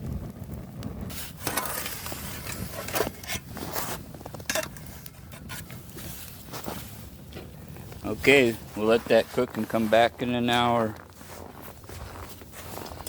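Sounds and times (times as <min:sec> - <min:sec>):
metal pan scraping and clinking: 0:01.4 - 0:03.8, 0:04.4 - 0:05.7.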